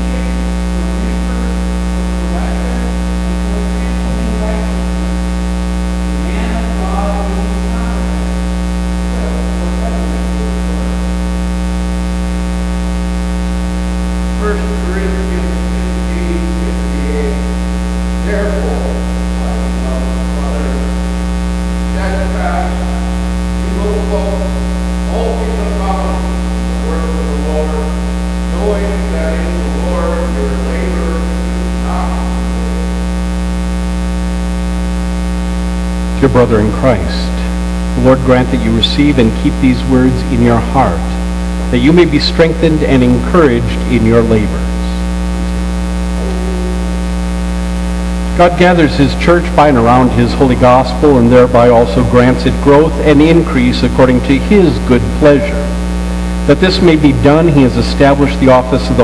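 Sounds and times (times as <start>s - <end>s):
faint voice: 0.0s - 5.0s, 6.2s - 8.4s, 18.2s - 21.0s, 21.9s - 33.0s, 36.2s - 41.1s, 46.2s - 46.9s
loud mains hum: 0.0s - 59.0s.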